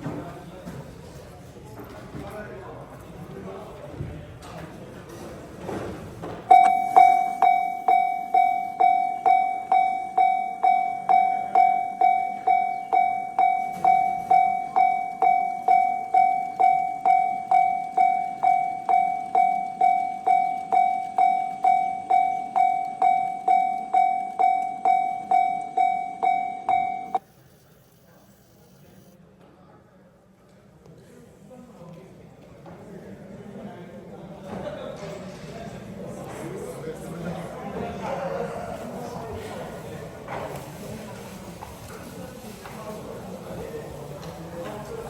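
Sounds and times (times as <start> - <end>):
railroad crossing bell dinging: 6.5 - 27.2.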